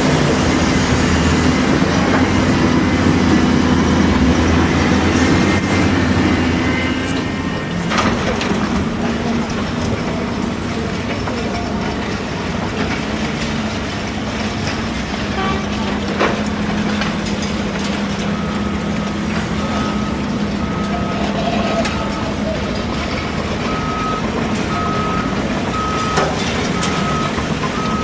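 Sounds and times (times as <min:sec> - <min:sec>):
excavator diesel engine running: 0:00.0 - 0:28.0
reversing alarm beeping: 0:18.2 - 0:28.0.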